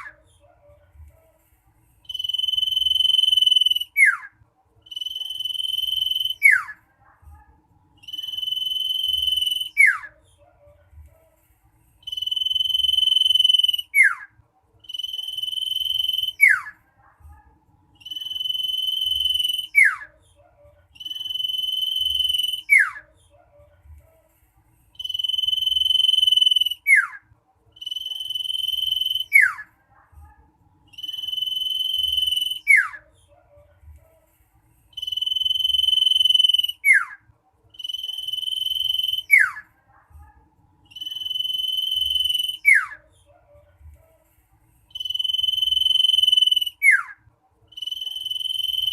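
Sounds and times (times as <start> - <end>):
bird whistling song: 2.0 - 4.3, 4.9 - 6.8, 8.0 - 10.2, 12.0 - 16.7, 18.0 - 20.1, 21.0 - 23.1, 25.0 - 27.2, 27.8 - 29.6, 30.9 - 33.0, 34.9 - 37.2, 37.8 - 39.6, 40.9 - 43.0, 44.9 - 48.9.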